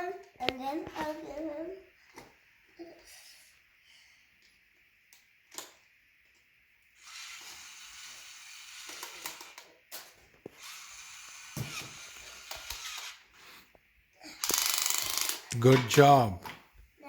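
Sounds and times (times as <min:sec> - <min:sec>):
toy screwdriver buzzing: 0:07.0 - 0:13.5, 0:14.4 - 0:15.6.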